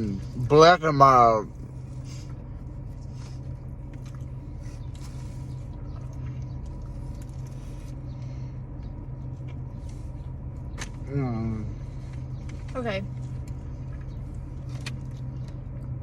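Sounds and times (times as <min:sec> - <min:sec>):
steady low hum: 0:00.0 - 0:16.0
chewing with wet mouth clicks: 0:02.3 - 0:10.0, 0:12.1 - 0:16.0.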